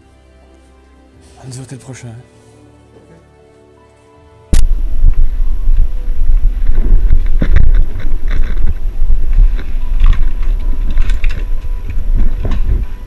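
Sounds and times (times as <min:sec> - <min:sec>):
camera microphone buffeting rumble: 0:04.5 - 0:13.0
scattered knocks and rustles: 0:06.6 - 0:13.0.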